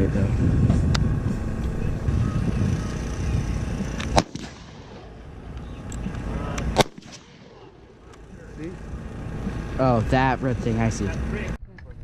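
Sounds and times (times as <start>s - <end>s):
low rumble: 0.0s - 12.0s
rifle shots: 4.0s - 5.2s, 6.6s - 8.3s.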